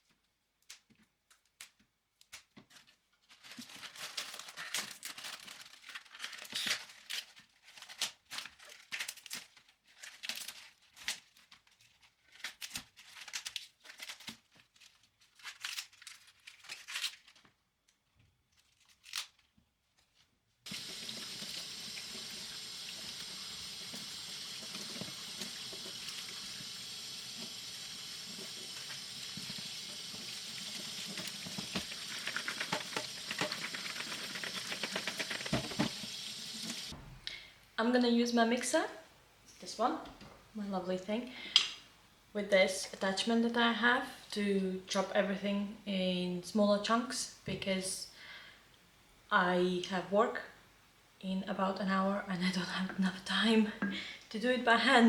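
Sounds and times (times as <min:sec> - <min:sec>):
packaging crinkling and tearing: 0:02.8 - 0:20.2, 0:30.1 - 0:35.8
tap running into sink: 0:28.4 - 0:37.1.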